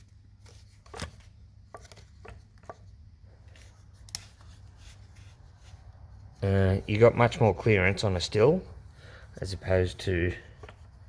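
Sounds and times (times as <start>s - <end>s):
clicks and knocks of handling: 0.4s - 3.0s.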